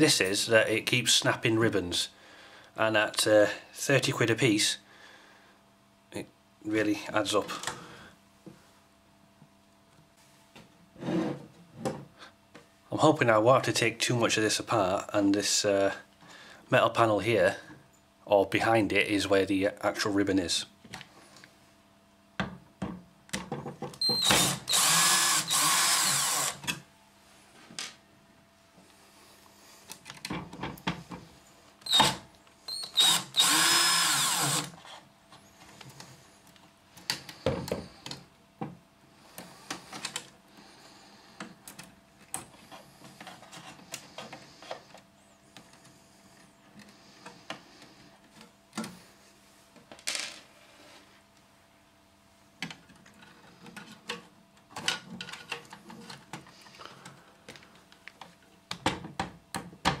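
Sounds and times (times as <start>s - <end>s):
electric screwdriver whining: 24.0s - 26.8s, 31.8s - 34.8s.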